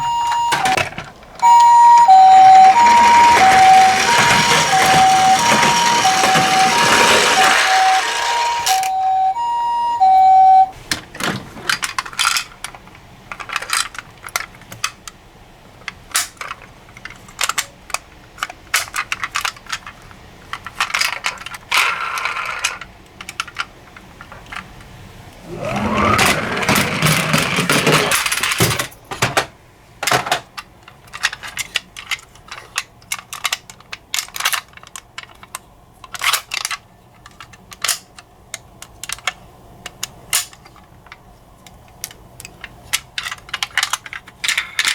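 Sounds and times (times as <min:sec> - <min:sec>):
two-tone siren: 0:00.0 - 0:00.8, 0:01.4 - 0:10.7
toy cars clicking and clattering: 0:00.1 - 0:09.0, 0:11.3 - 0:15.2, 0:15.8 - 0:44.9
toy car rolling down a slope: 0:01.4 - 0:09.0, 0:25.5 - 0:28.5.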